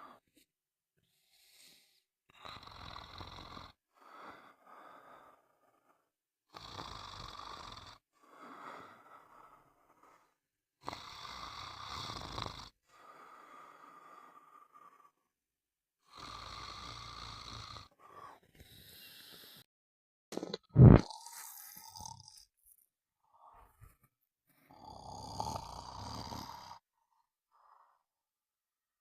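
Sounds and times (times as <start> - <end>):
person snoring: 2.3 - 4.2, 6.5 - 10.0, 10.8 - 15.2, 16.0 - 19.7, 20.4 - 22.5, 24.7 - 26.9.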